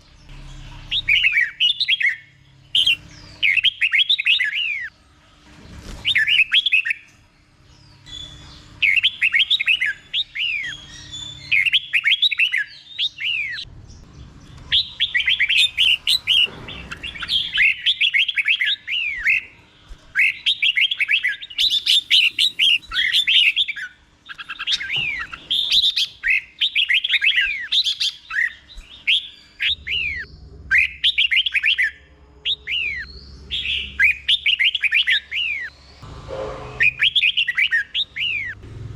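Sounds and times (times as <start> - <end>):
bird whistled song: 0.8 - 4.9, 6.0 - 7.1, 7.9 - 13.7, 14.5 - 35.8, 36.8 - 38.6.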